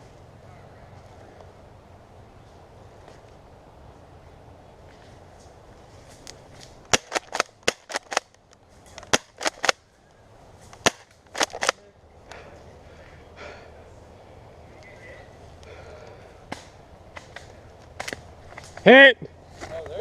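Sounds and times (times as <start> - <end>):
airsoft gun shots: 6.9 - 8.3, 9.1 - 9.8, 10.8 - 11.8.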